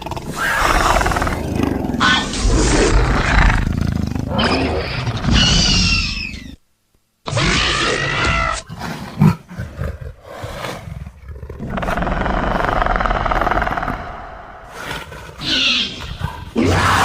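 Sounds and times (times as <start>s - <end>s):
rattling growl: 0.0s - 4.5s, 11.2s - 15.7s
creature shrieking call: 0.3s - 1.4s, 4.4s - 6.6s, 7.3s - 8.7s, 15.4s - 17.0s.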